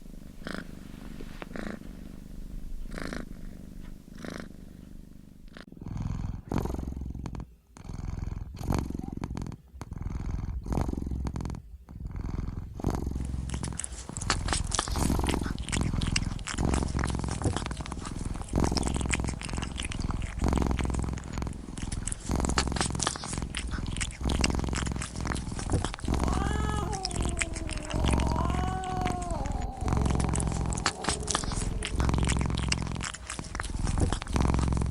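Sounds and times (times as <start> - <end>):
crackly hiss: 0.0 - 5.7, 12.8 - 34.9
kitten purring: 0.0 - 34.9.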